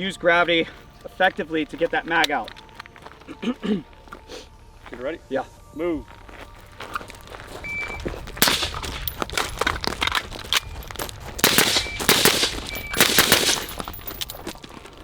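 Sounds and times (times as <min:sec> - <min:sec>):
footsteps: 0:00.0 - 0:05.2, 0:06.0 - 0:15.0
rifle shots: 0:08.4 - 0:10.8, 0:11.4 - 0:14.3.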